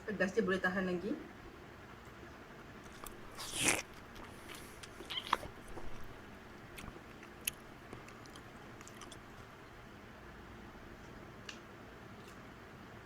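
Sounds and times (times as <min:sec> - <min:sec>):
noodle slurp: 0:02.8 - 0:09.3
chewing smacks: 0:02.8 - 0:09.5.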